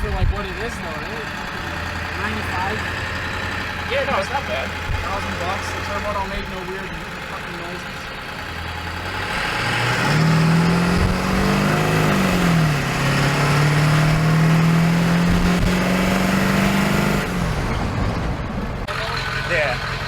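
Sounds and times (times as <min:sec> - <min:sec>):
diesel engine revving: 0:00.0 - 0:20.0.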